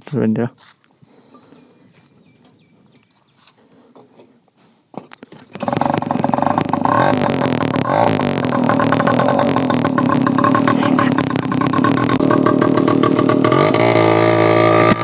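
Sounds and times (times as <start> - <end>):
moped engine running loud: 5.6 - 15.0.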